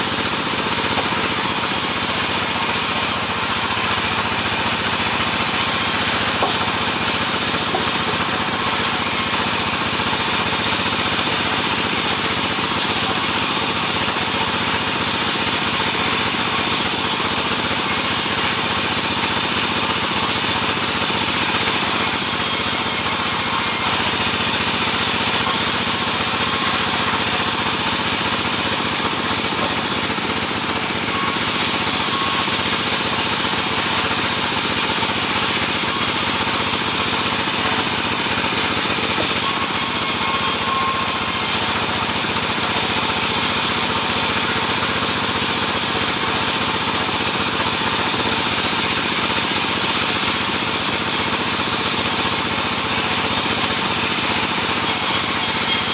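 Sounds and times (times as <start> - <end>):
sawmill sawing wood: 0.0 - 55.9.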